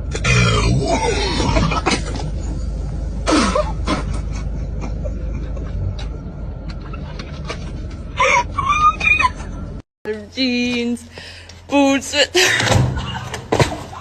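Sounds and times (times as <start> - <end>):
person making throaty sound: 0.0 - 1.9
steady low rumble: 0.0 - 13.3.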